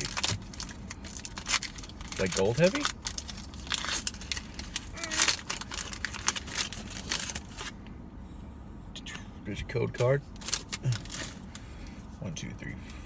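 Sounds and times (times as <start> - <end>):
foil wrapper crinkling and tearing: 0.0 - 7.7, 10.4 - 11.4.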